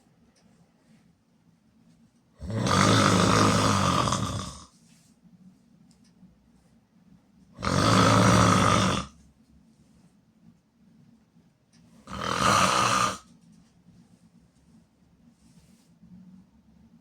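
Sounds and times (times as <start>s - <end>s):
person snoring loudly: 2.4s - 4.7s, 7.6s - 9.2s, 12.0s - 13.3s.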